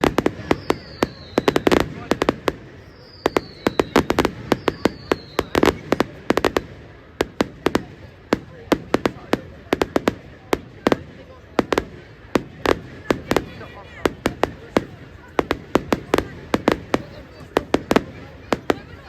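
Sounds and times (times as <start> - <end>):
falling firework whistles: 0.0 - 6.5
fireworks bangs and crackles: 0.0 - 19.0.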